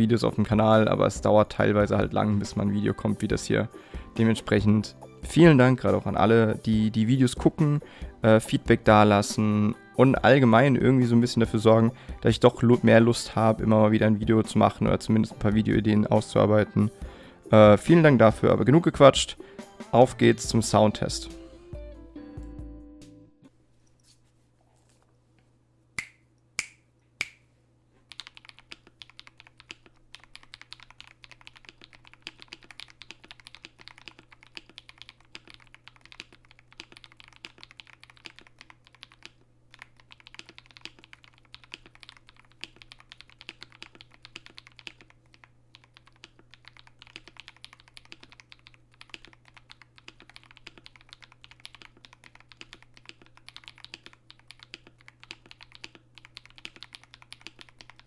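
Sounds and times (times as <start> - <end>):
mechanical keyboard typing: 28.1 - 58.0.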